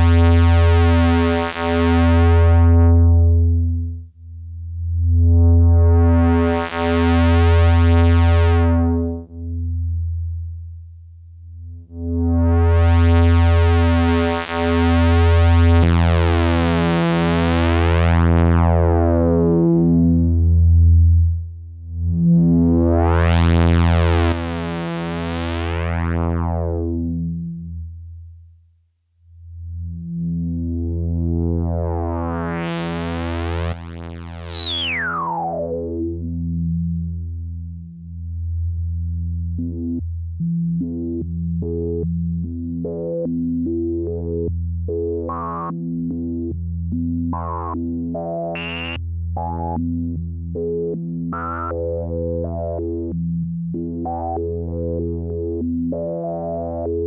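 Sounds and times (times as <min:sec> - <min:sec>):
buzzy synthesizer bass note: 0:00.0 - 0:04.1, 0:04.7 - 0:10.8, 0:11.7 - 0:28.0, 0:29.6 - 0:37.7, 0:47.3 - 0:50.2.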